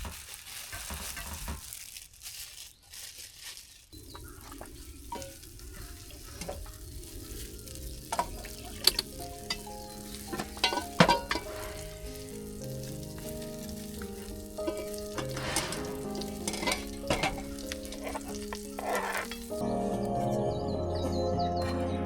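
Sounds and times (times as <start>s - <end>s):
food sizzling in a pan: 3.5s - 19.6s
utensil stirring and scraping: 3.9s - 19.6s
soft background music: 7.0s - 22.0s.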